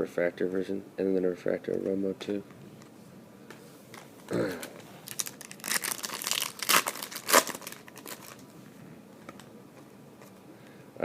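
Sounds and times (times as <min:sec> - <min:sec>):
wrapper tearing and crinkling: 0:05.0 - 0:08.5.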